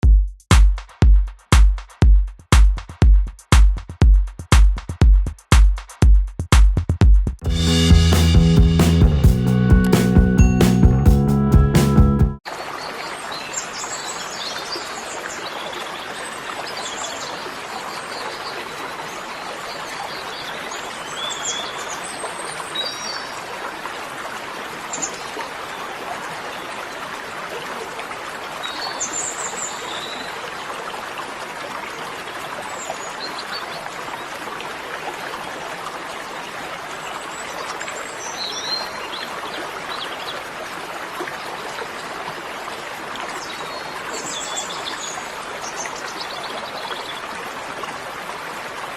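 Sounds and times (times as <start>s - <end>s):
flowing stream water: 12.4s - 48.9s.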